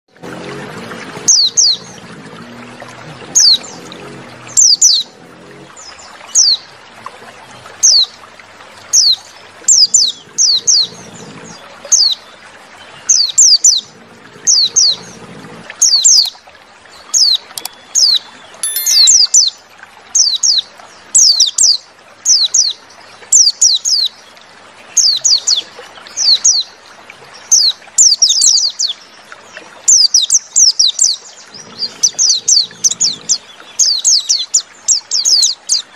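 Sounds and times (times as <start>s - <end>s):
high downward-sliding bird chirps: 17.5s - 19.5s.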